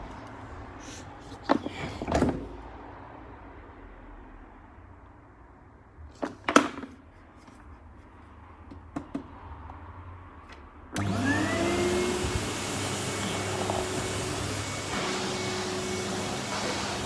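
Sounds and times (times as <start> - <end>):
vacuum cleaner motor whine: 11.0 - 17.0.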